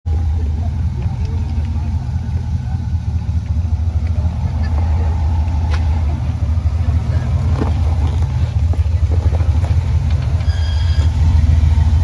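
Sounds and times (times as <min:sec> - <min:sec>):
engine rumbling at low revs: 0:00.0 - 0:12.0
high squeal: 0:10.3 - 0:12.0.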